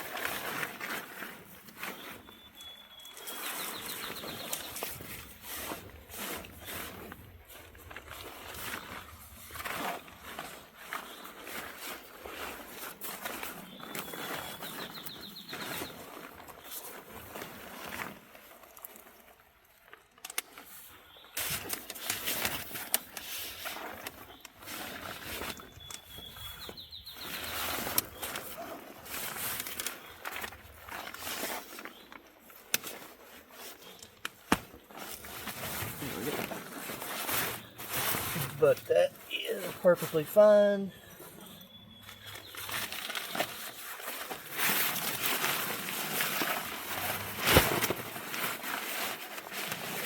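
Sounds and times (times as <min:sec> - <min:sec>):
bird singing trill: 0:02.0 - 0:04.9, 0:13.6 - 0:16.0, 0:25.4 - 0:28.4, 0:40.9 - 0:43.8
rustling: 0:19.8 - 0:50.0.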